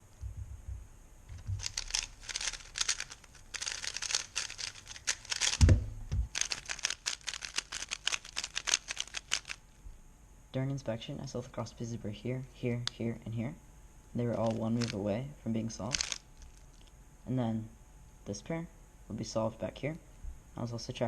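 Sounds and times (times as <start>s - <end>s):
low thud: 0.2s - 1.7s, 5.6s - 6.3s
puzzle cube clicking: 1.4s - 9.6s, 14.2s - 15.0s, 15.8s - 16.9s.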